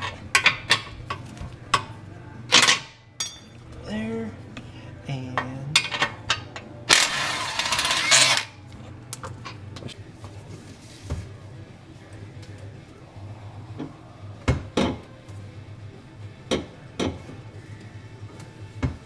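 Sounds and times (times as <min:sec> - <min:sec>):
tools and metal clanking: 0:00.0 - 0:03.6, 0:05.4 - 0:08.5
low steady hum: 0:00.0 - 0:19.0.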